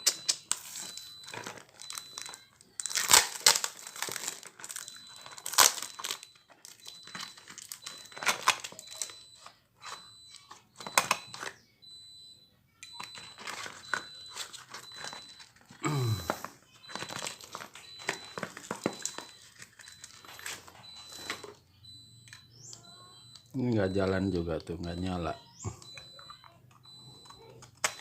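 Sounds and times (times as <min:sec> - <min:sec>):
plastic wrapping crinkling: 0:00.0 - 0:11.5, 0:13.1 - 0:21.6.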